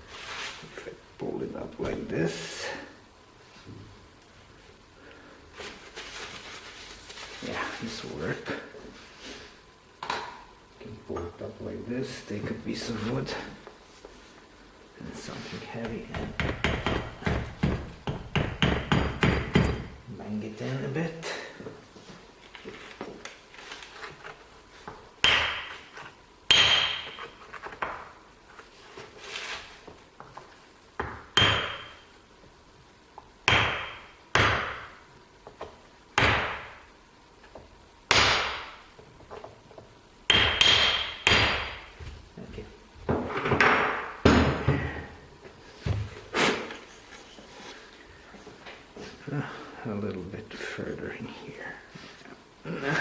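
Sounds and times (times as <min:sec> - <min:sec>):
hammer striking wood: 0:16.2 - 0:19.9, 0:25.2 - 0:25.8, 0:26.5 - 0:27.2, 0:31.0 - 0:32.0, 0:33.5 - 0:34.9, 0:36.2 - 0:36.8, 0:38.1 - 0:38.8, 0:40.3 - 0:41.9.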